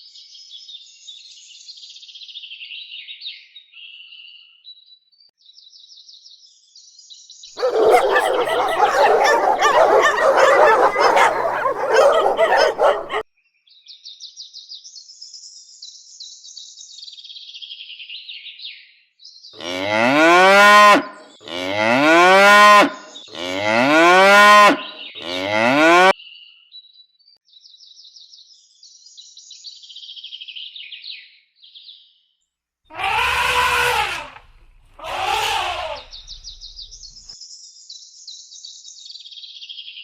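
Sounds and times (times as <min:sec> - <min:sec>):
cow mooing: 0:07.6 - 0:13.2, 0:19.6 - 0:26.1.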